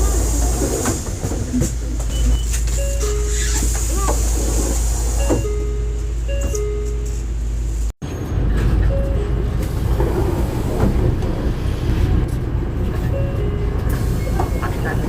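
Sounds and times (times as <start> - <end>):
bus cabin noise: 0.0 - 15.0
diesel engine running: 0.0 - 15.0
electronic door chime: 2.1 - 4.1, 5.2 - 7.2.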